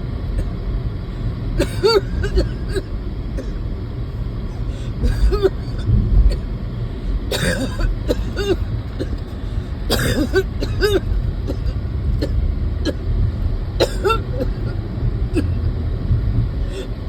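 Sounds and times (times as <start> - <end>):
steady low rumble: 0.0 - 17.0
person coughing: 1.6 - 3.5, 5.0 - 6.4, 7.3 - 9.3, 9.9 - 13.0, 13.8 - 14.8.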